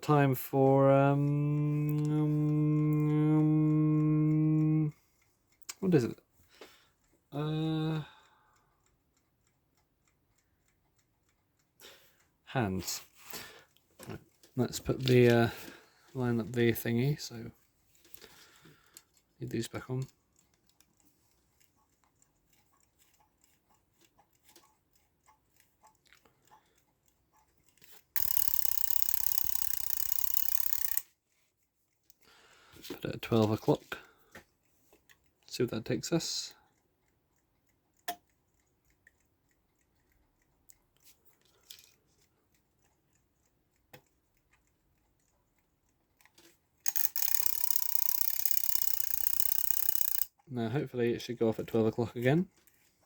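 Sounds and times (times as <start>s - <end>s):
light clicks of small parts: 0.0s - 53.0s
alarm clock hammer rattling: 28.2s - 31.1s, 46.9s - 50.3s.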